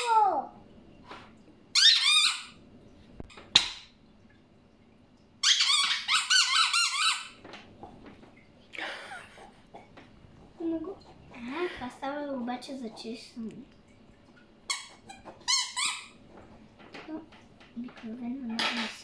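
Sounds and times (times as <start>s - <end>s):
rubber squeeze toy squealing: 5.4s - 7.3s.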